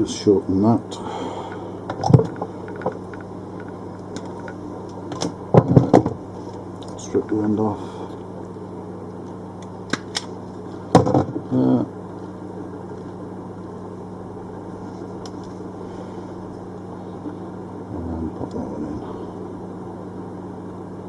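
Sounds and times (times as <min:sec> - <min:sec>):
steady low hum: 0:00.0 - 0:21.0
wire stripper clicks: 0:09.2 - 0:10.4.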